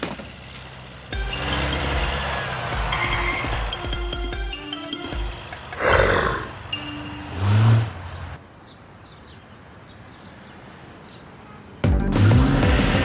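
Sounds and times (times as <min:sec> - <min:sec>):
music: 0:01.1 - 0:06.2, 0:11.8 - 0:13.0
short low roar: 0:05.8 - 0:06.7.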